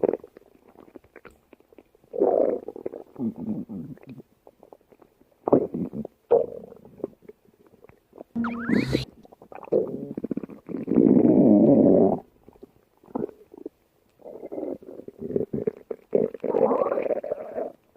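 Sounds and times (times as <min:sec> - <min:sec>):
stomach gurgling: 0:00.0 - 0:08.4, 0:09.2 - 0:17.9
short sharp sound: 0:08.4 - 0:09.1.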